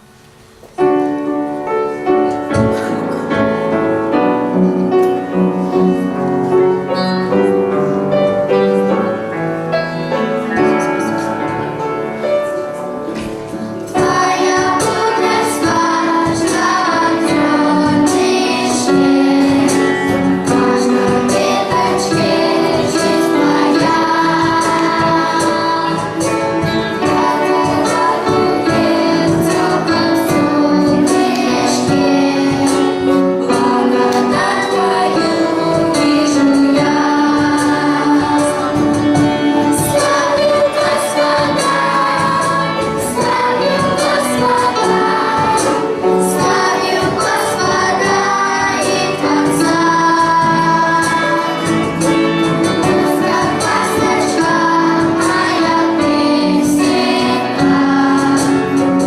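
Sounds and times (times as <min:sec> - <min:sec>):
instrumental accompaniment: 0:00.0 - 0:59.0
children singing a hymn: 0:00.8 - 0:59.0.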